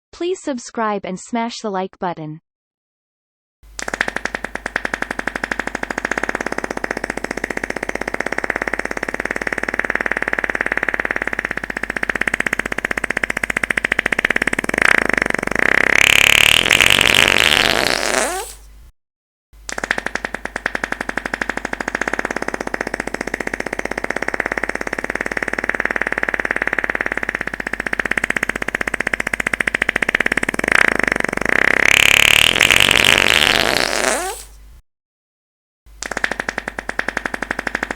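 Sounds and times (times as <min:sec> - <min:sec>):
fart sound effect: 0:03.8 - 0:18.6, 0:19.7 - 0:34.5.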